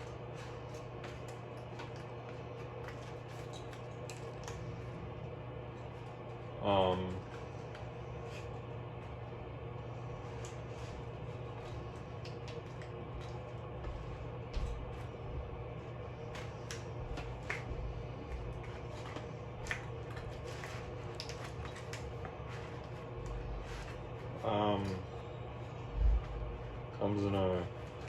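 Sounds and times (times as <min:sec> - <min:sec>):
steady low hum: 0:00.0 - 0:28.0
packaging rustling: 0:16.3 - 0:25.1
soft low thumps: 0:25.9 - 0:26.8.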